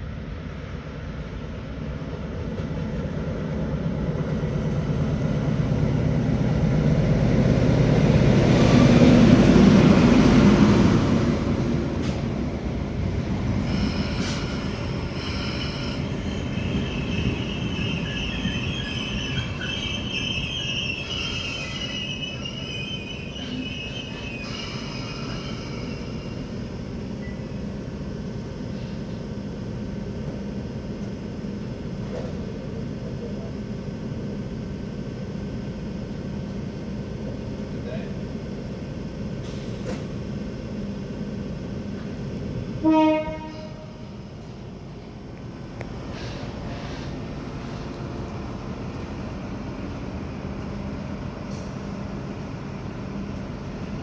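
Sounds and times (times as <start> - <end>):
train wheels rumbling: 0.7 - 29.2
train brakes squealing: 13.6 - 27.6, 46.1 - 48.0.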